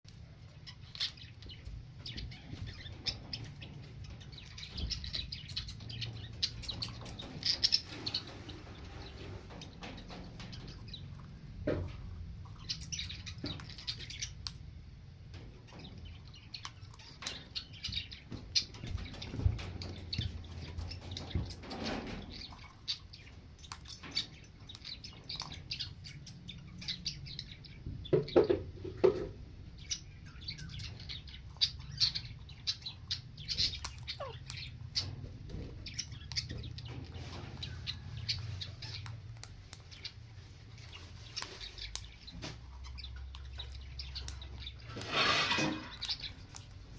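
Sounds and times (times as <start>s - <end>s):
parrot chirping: 0.4s - 11.8s, 12.4s - 14.6s, 29.8s - 46.9s.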